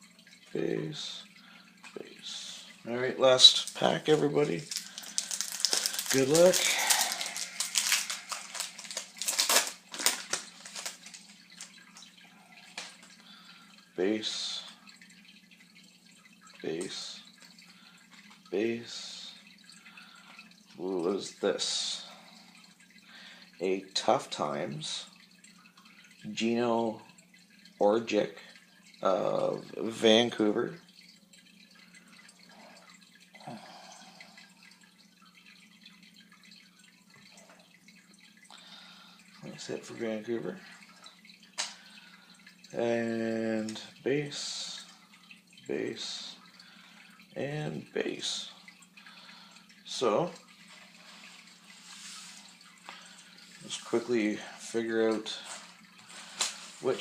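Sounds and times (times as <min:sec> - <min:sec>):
trading cards rustling: 0:03.6 - 0:11.8
wrapper torn open and crinkled: 0:04.6 - 0:11.3.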